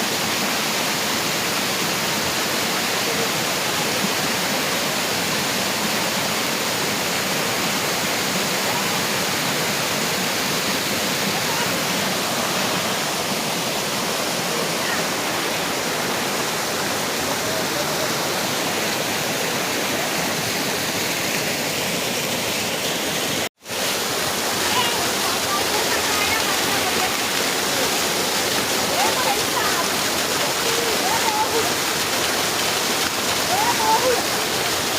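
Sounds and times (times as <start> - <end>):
water splashing over rocks: 22.4 - 34.9.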